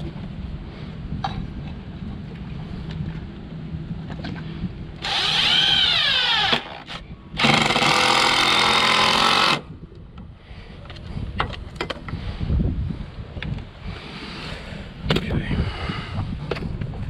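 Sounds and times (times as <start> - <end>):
power drill running: 5.0 - 6.8, 7.4 - 9.6.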